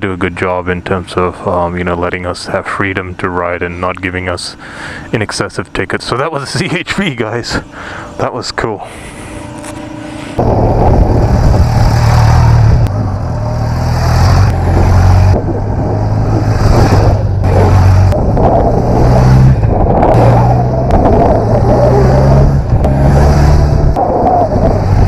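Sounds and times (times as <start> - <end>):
motorcycle engine shifting gears: 9.4 - 25.0.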